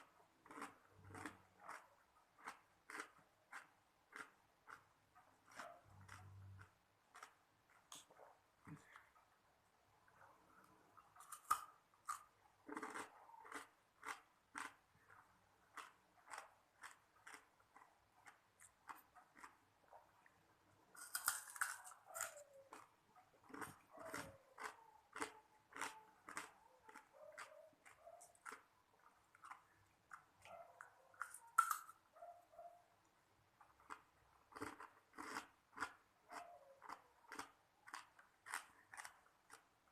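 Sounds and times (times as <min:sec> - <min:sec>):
ice cubes being chewed: 0:00.4 - 0:08.0, 0:11.2 - 0:19.6, 0:20.9 - 0:30.4, 0:31.2 - 0:32.0, 0:33.7 - 0:39.7
ice cubes crunching in mouth: 0:21.0 - 0:22.8, 0:31.2 - 0:32.0.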